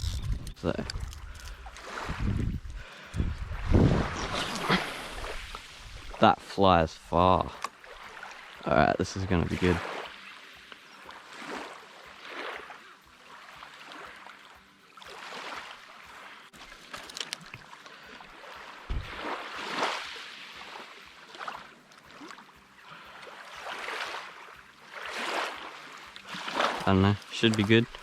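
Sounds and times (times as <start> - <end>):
small waves washing ashore: 0.6 - 28.0
short low thump: 18.9 - 19.2.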